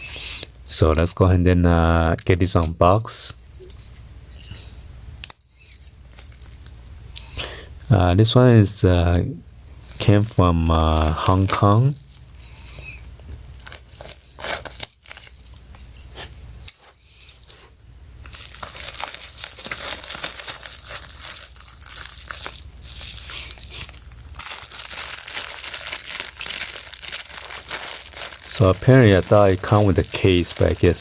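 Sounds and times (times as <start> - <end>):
packaging tearing and crinkling: 13.4 - 17.6, 18.2 - 31.0.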